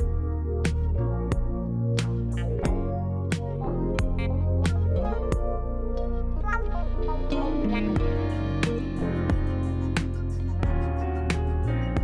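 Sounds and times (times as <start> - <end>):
music with deep bass and beat: 0.0 - 12.0.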